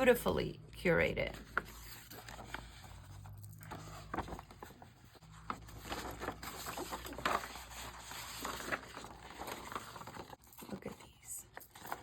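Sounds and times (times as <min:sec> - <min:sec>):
paper rustling and crinkling: 0:01.3 - 0:12.0.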